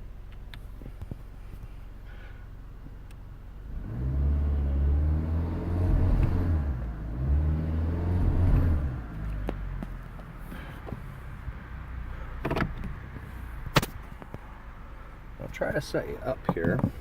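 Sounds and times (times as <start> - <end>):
car engine revving: 3.7 - 14.0.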